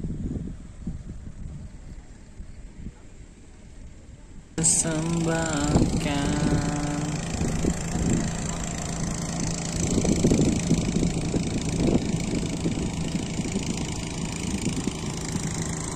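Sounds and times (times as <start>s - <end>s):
motor idling: 4.6s - 15.9s.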